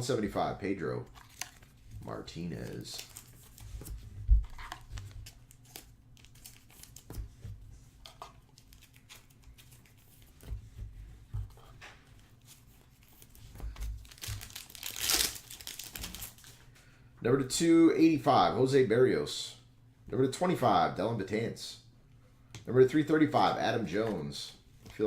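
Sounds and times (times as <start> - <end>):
cards clicking and rustling: 1.1 - 1.8, 2.4 - 7.3, 8.1 - 10.5, 12.4 - 16.6
plastic wrapping crinkling and tearing: 2.6 - 3.7, 13.1 - 16.6.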